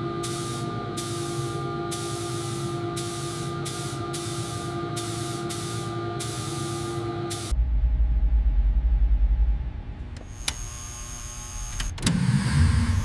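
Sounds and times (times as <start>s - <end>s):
machine hum: 0.0s - 13.0s
hissing spray bursts: 0.2s - 7.5s
deep low rumble: 7.5s - 10.4s.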